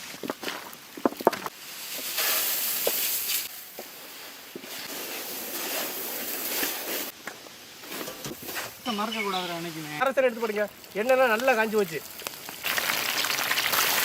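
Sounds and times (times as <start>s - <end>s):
chicken frying in hot oil: 9.8s - 14.0s.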